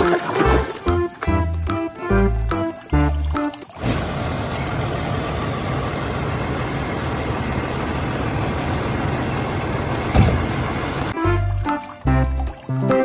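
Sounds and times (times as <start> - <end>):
single thump: 10.1 - 10.5.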